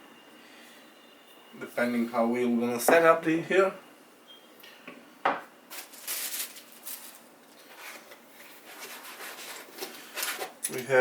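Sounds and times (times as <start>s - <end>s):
rubbing and scraping parts: 5.7s - 10.8s.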